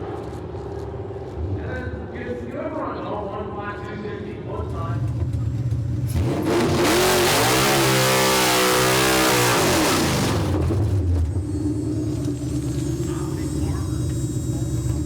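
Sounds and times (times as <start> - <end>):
race car engine at full throttle: 4.9 - 15.0.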